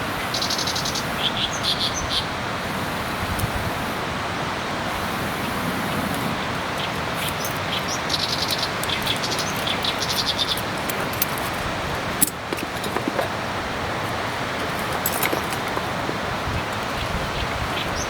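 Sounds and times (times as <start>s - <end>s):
small bird twittering: 6.7s - 10.8s.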